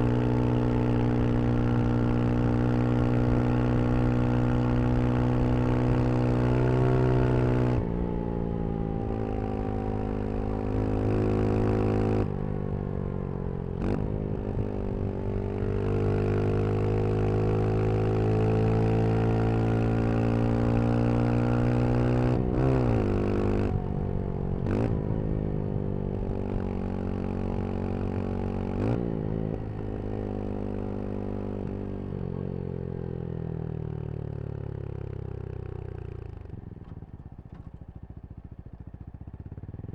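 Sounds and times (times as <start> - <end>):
motorcycle engine under load: 22.5 - 39.9.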